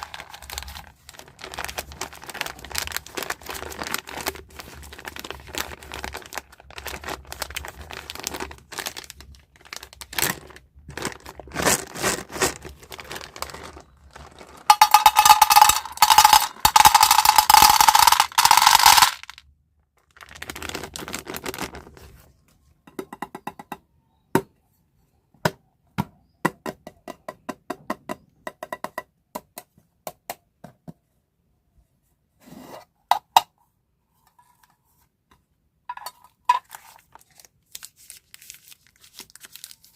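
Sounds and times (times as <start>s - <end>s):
plastic packaging crinkling: 0.0s - 19.4s, 20.0s - 22.2s, 36.6s - 39.9s.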